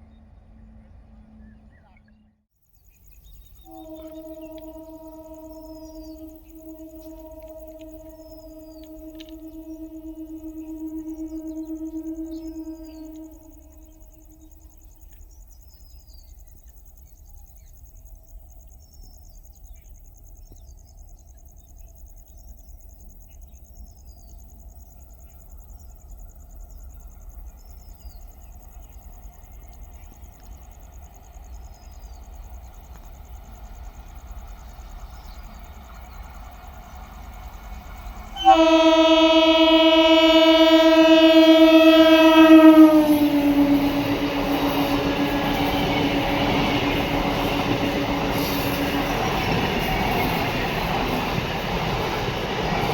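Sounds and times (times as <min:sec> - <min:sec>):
low train rumble: 0:00.0 - 0:52.9
faint chirps: 0:01.4 - 0:18.0
faint high steady tone: 0:03.2 - 0:15.2, 0:38.3 - 0:52.0
train horn blast: 0:03.6 - 0:15.1, 0:37.7 - 0:52.9.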